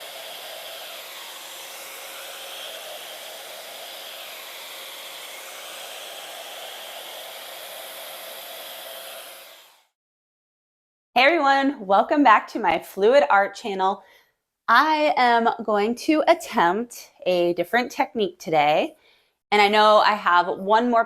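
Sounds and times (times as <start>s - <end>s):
blow dryer running: 0.0s - 9.9s.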